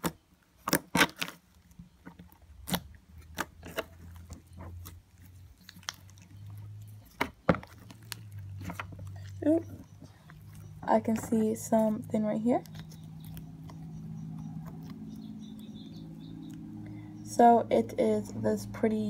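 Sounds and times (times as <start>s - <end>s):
slime squelching and popping: 0.0s - 16.7s
faint low hum: 1.3s - 19.0s.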